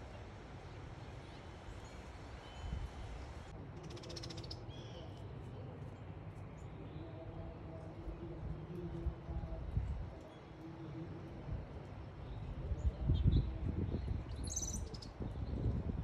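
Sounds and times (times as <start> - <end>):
songbird chirps: 3.8 - 7.8, 10.1 - 15.7.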